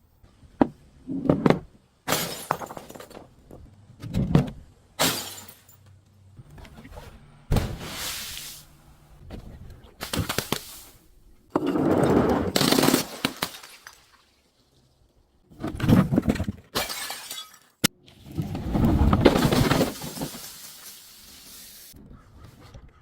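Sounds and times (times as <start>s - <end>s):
glass breaking and crunching: 2.1s - 3.2s, 5.0s - 5.8s, 16.7s - 17.9s, 19.3s - 21.2s.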